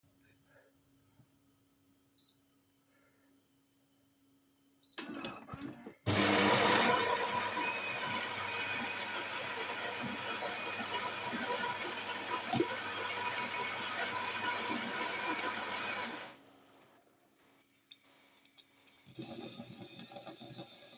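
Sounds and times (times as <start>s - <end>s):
coffee grinder grinding beans: 5.0s - 16.4s, 17.5s - 20.9s
coffee machine mechanical noises: 5.0s - 16.4s.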